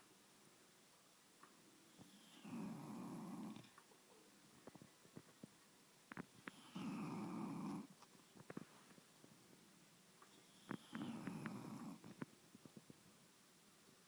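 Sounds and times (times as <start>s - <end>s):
dog snoring: 1.9s - 3.8s, 6.1s - 7.9s, 10.4s - 12.3s.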